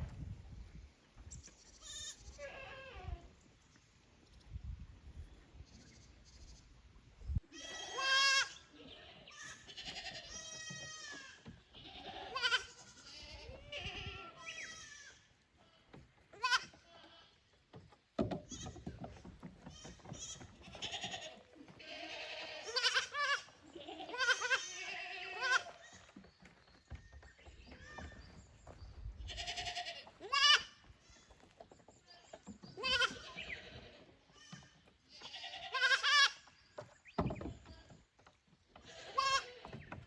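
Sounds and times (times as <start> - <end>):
young goats bleating: 1.3 - 3.4, 7.5 - 17.4, 19.7 - 26.0, 29.2 - 31.4, 32.0 - 36.6, 38.8 - 39.9.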